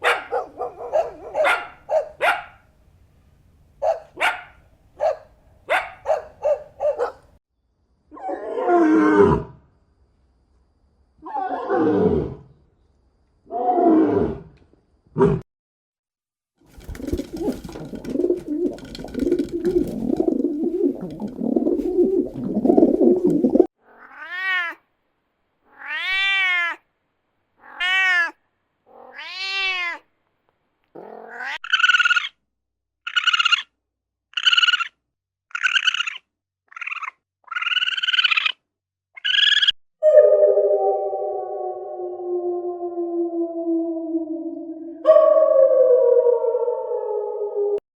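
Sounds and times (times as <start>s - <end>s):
cat calls: 23.8s - 24.8s, 25.7s - 26.8s, 27.6s - 30.0s
cat growling: 23.8s - 24.8s, 27.6s - 30.0s, 30.9s - 31.6s
cat meowing: 23.8s - 24.8s, 25.7s - 26.8s, 27.6s - 30.1s, 31.0s - 32.3s
high cat mews: 23.8s - 24.8s, 25.7s - 26.8s, 27.6s - 30.0s.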